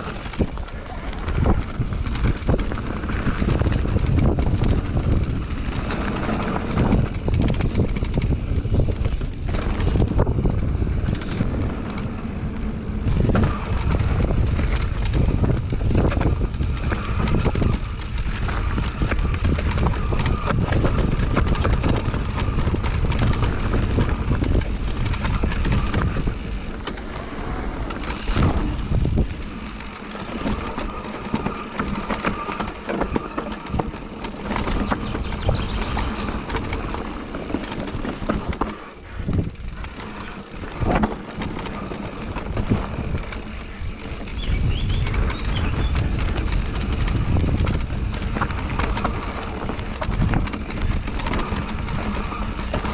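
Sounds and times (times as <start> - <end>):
heavy low rumble: 0.0 - 32.2
bike knocks and rattles: 0.0 - 52.9
bike tyres rolling on dirt: 0.0 - 52.9.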